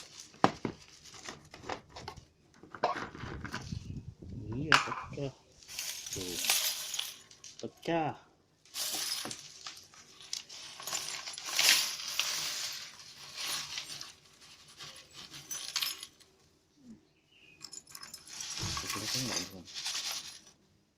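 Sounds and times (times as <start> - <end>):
broken glass rattling in flask: 17.6 - 20.5.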